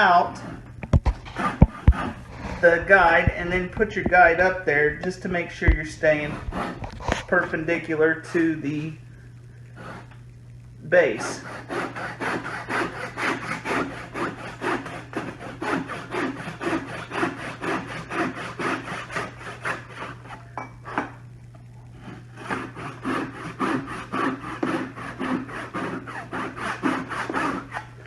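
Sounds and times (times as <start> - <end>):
handsaw cutting wood: 0.0 - 3.1, 6.0 - 7.4, 9.8 - 10.1, 11.2 - 20.5, 22.0 - 28.0.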